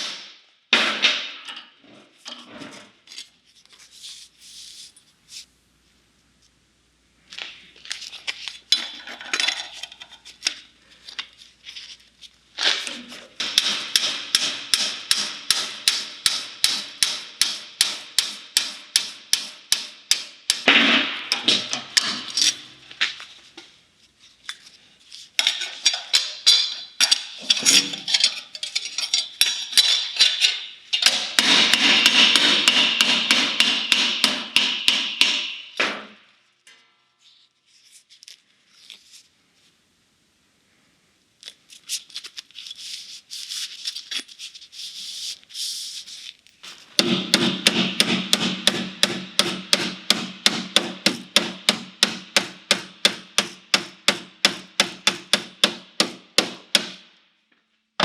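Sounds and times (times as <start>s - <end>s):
rapid hammer blows on sheet metal: 0.0s - 1.4s, 13.4s - 22.5s, 31.0s - 36.1s, 47.0s - 57.0s.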